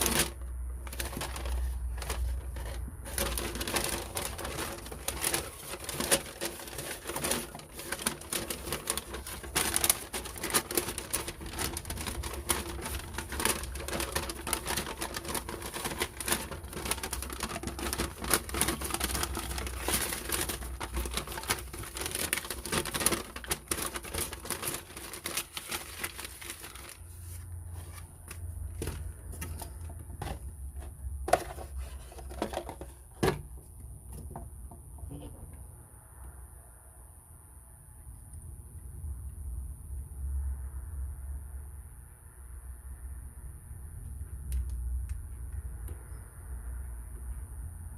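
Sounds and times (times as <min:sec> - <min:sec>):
handling clicks and rustles: 0:00.0 - 0:27.0
low steady hum: 0:00.0 - 0:47.9.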